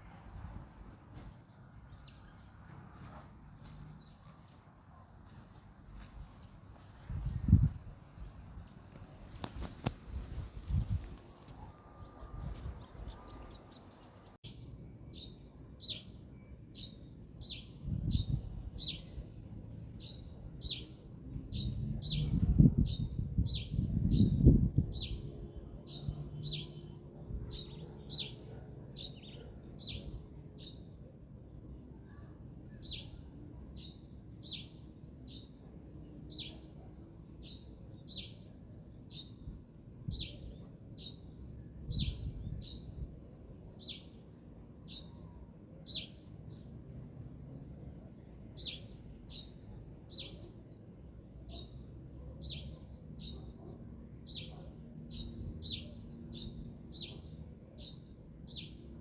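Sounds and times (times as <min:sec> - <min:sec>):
low rumble of wind: 0:00.0 - 0:59.0
bird chirping: 0:08.5 - 0:30.9, 0:48.5 - 0:59.0.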